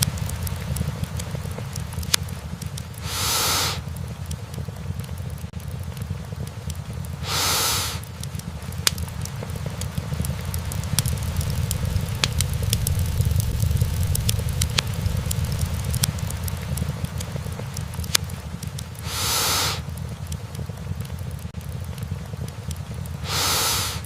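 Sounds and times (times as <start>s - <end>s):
logs crackling and popping: 0.0s - 24.0s
low rumble of flames: 0.0s - 24.0s
brief hiss: 3.0s - 3.8s, 7.2s - 8.0s, 19.0s - 19.8s, 23.2s - 24.0s.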